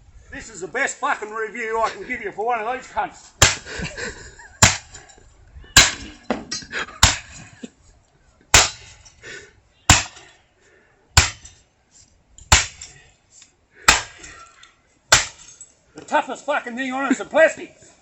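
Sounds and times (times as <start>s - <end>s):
heavy blows smashing chainsaw: 3.4s - 3.9s, 4.6s - 5.0s, 5.8s - 7.4s, 9.9s - 10.2s, 11.2s - 11.6s, 12.5s - 12.9s, 13.9s - 14.3s, 15.1s - 15.5s
loose parts clattering: 4.8s - 7.6s.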